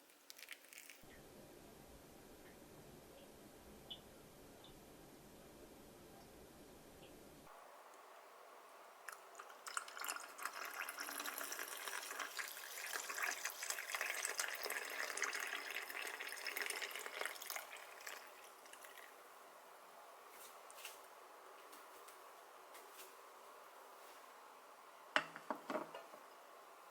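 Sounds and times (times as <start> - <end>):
liquid pouring: 0.3 - 1.0, 9.1 - 19.2.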